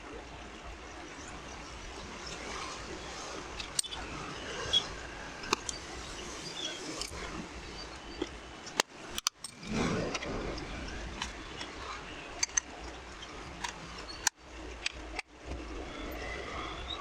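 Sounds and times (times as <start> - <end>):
tools and metal parts clicking: 3.6 - 4.0, 8.1 - 10.4, 11.2 - 15.2.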